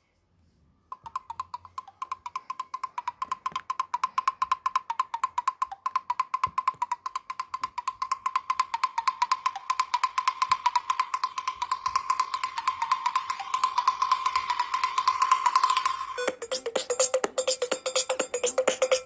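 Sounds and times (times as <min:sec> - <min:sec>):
phone ringtone: 0:04.8 - 0:19.0.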